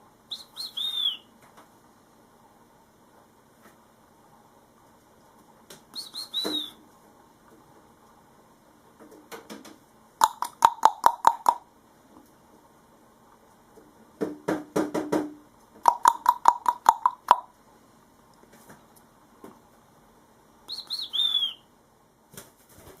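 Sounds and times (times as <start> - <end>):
bird chirp: 0.3 - 1.3, 6.0 - 6.8, 20.7 - 21.7
bird beak knocking on hard surface: 14.2 - 17.4.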